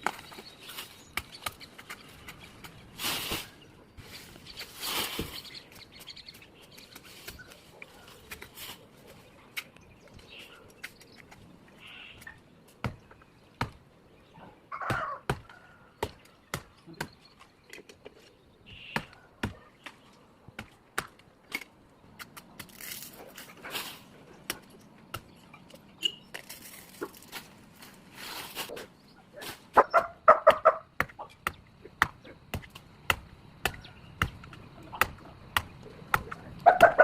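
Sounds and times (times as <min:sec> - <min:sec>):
blade chopping wood: 0:30.5 - 0:37.0.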